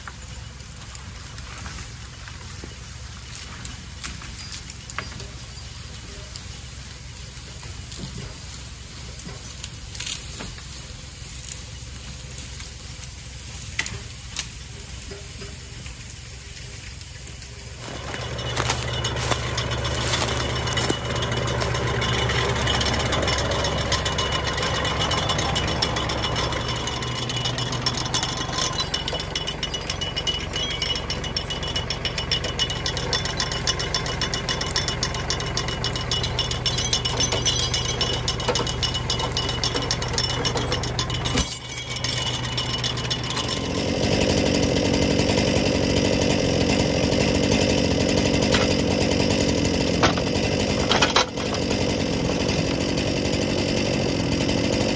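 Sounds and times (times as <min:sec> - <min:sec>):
engine running: 0:00.0 - 0:54.9
metallic rattle: 0:17.8 - 0:43.6.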